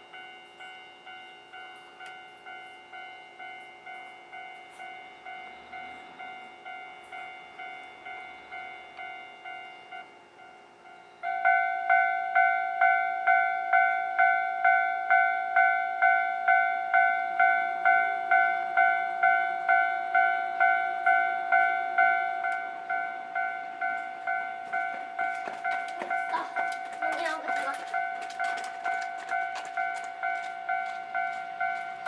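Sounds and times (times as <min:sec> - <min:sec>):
electronic crossing bell alarm: 0:00.0 - 0:32.0
train wheels clicking over rail joints: 0:23.8 - 0:32.0.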